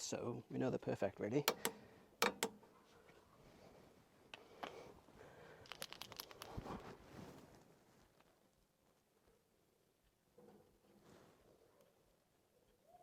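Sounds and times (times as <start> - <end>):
torque wrench clicking: 1.5 - 2.6
tools being handled: 1.5 - 2.7, 5.6 - 6.6.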